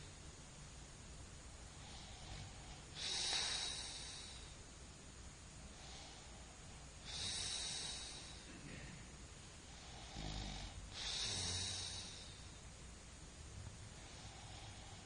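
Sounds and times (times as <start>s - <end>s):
person snoring: 9.8s - 12.4s.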